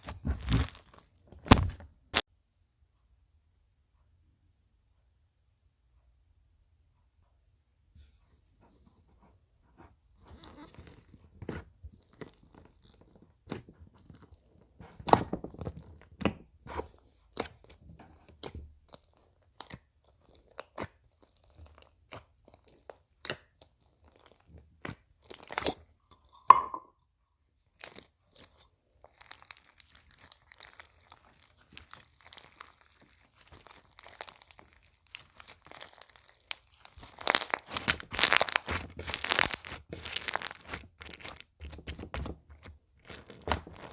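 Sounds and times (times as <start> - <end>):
slime popping and crackling: 0.0 - 1.8, 17.4 - 25.8, 27.8 - 43.9
slime squeak: 10.2 - 11.1, 29.1 - 41.4.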